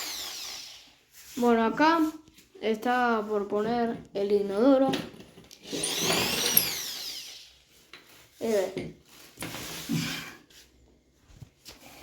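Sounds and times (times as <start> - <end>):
electric drill winding down: 0.0 - 1.0, 5.6 - 7.6.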